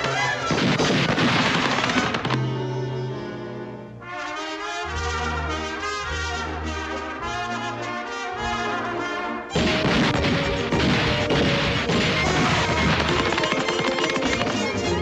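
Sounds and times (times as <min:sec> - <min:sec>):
loud crashing clatter: 0:00.5 - 0:02.4, 0:09.6 - 0:14.6
cartoon orchestral music with brass: 0:01.8 - 0:15.0.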